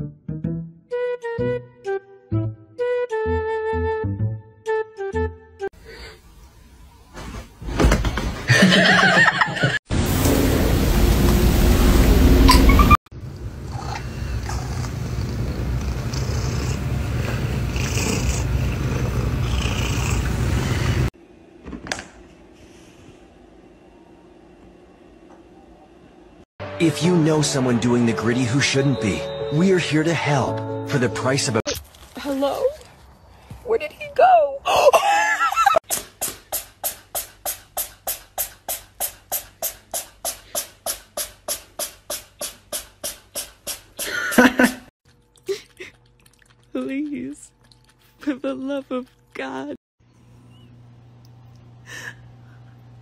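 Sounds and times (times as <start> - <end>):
cat purring: 13.7 - 21.1.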